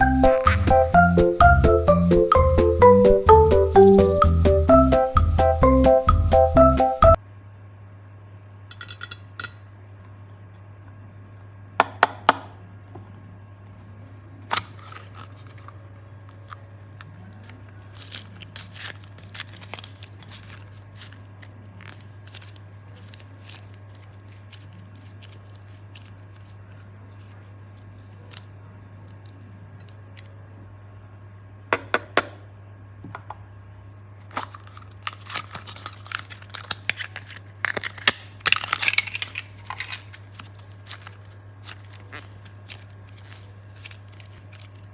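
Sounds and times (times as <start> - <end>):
craft materials clicking and crinkling: 14.5 - 30.3, 34.3 - 44.9.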